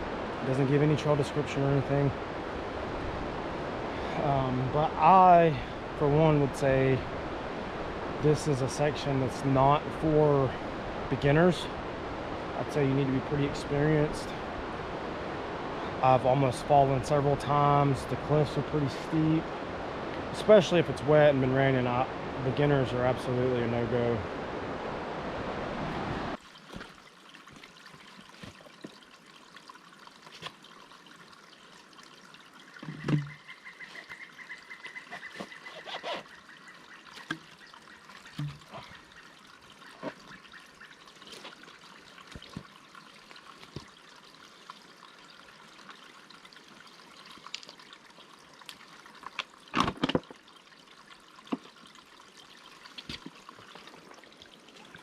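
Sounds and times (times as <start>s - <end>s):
stream of water trickling: 0.0s - 55.0s.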